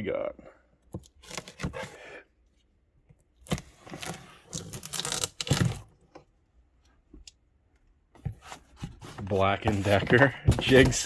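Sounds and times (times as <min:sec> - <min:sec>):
cardboard box tearing and rustling: 0:08.5 - 0:11.0.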